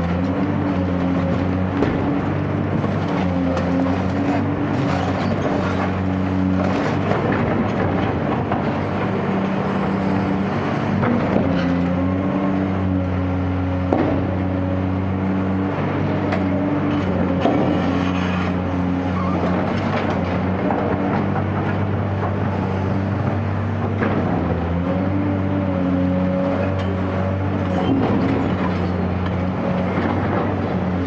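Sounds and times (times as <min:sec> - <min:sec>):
excavator diesel engine running: 0:00.0 - 0:31.0.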